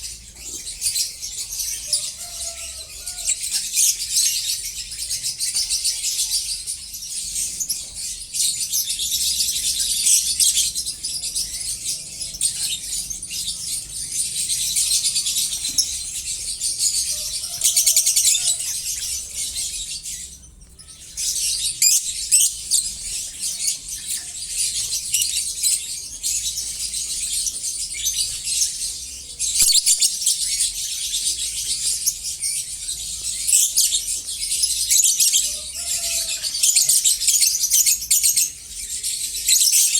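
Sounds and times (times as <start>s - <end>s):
lovebirds chattering and chirping: 0.0s - 39.9s.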